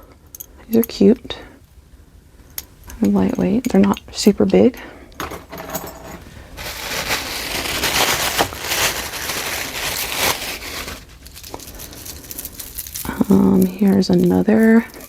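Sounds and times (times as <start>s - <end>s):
packaging crinkling and rustling: 6.2s - 15.0s.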